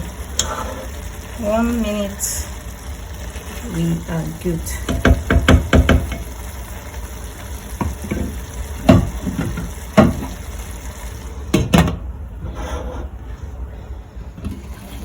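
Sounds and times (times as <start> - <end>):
stew sizzling in a pot: 0.0 - 11.5
utensil knocking against pot: 4.8 - 6.3.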